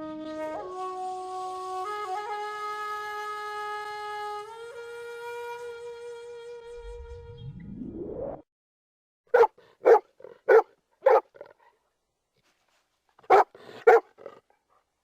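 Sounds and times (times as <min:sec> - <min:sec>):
dog barking: 0:09.3 - 0:11.8, 0:13.2 - 0:14.6.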